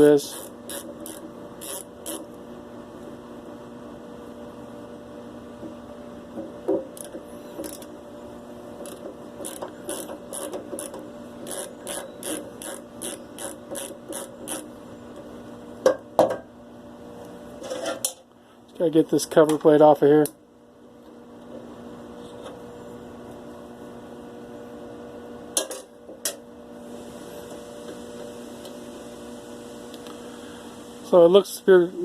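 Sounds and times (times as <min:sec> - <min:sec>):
steady low hum: 0:00.0 - 0:32.0
ratchet clicking: 0:00.2 - 0:02.3, 0:08.8 - 0:14.7.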